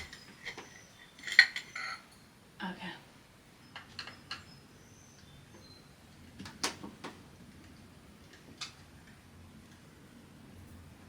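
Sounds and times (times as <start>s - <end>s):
small hard objects clicking and knocking: 0.0s - 2.0s.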